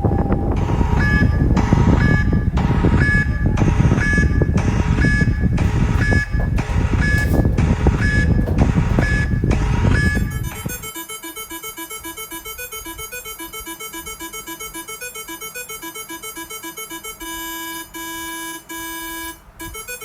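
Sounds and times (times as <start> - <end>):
rough rumbling noise: 0.0 - 10.8.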